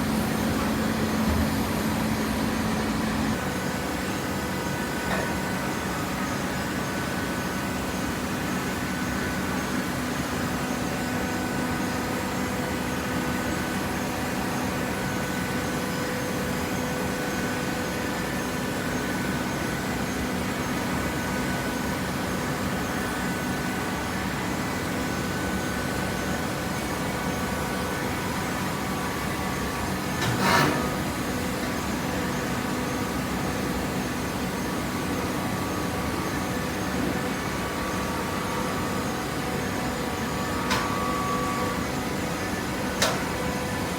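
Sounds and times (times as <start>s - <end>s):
baler machine hum: 0.0s - 6.2s.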